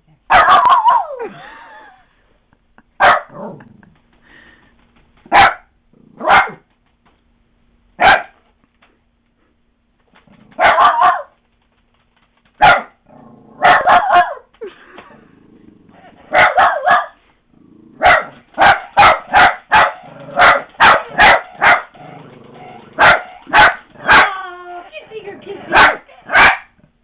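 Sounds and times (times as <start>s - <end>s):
puppy barking: 0.3s - 1.2s, 3.0s - 3.4s, 5.3s - 6.7s, 8.0s - 8.4s, 10.6s - 11.3s, 12.6s - 13.0s, 13.6s - 14.5s, 16.3s - 17.2s, 18.0s - 22.0s, 22.9s - 24.4s, 25.6s - 26.8s.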